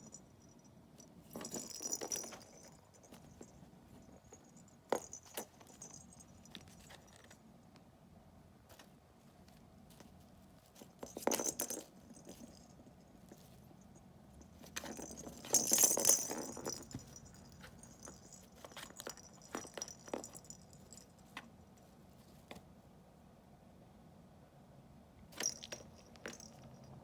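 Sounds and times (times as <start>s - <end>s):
toys rattling in a box: 1.3s - 7.4s, 10.8s - 12.7s, 14.7s - 21.0s.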